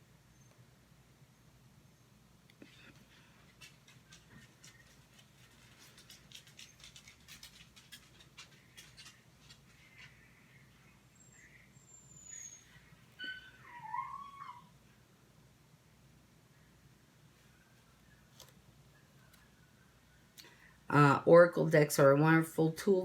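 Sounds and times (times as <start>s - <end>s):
rustling: 2.6s - 11.5s
animal whining call: 11.2s - 14.8s.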